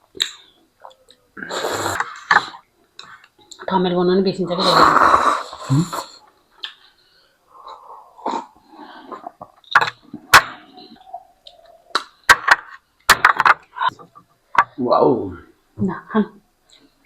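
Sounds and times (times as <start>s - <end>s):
mouth sounds eating noodles: 0.2s - 3.1s, 4.6s - 6.8s.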